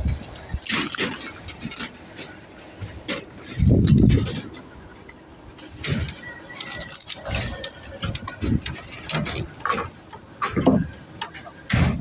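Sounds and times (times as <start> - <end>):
irregular clicks and knocks: 5.6 - 12.0.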